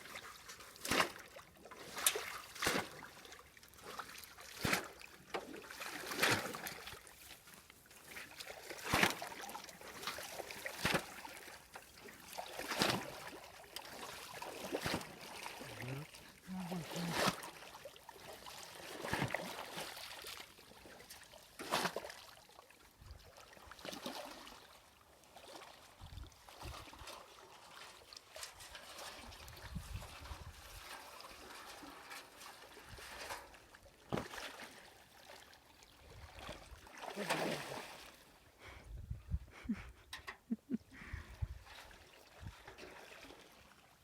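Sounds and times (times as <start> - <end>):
water splashing and sloshing: 0.0 - 38.8, 39.5 - 44.0.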